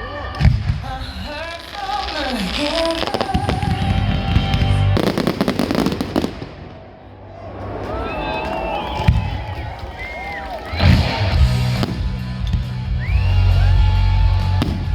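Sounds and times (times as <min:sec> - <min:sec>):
fireworks bangs and crackling: 0:00.2 - 0:06.9, 0:08.9 - 0:14.9
music playing: 0:03.0 - 0:14.9.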